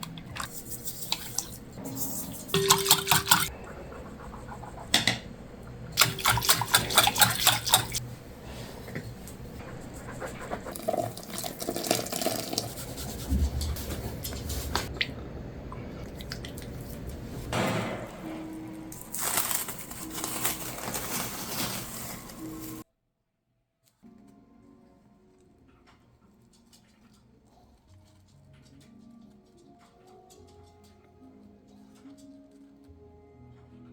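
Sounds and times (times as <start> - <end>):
utensils and bowl handling: 0.0 - 8.0, 10.6 - 14.9, 18.9 - 22.8
stirring in a bowl: 0.0 - 15.0
liquid pouring: 2.4 - 3.5, 6.0 - 8.0, 10.8 - 12.9.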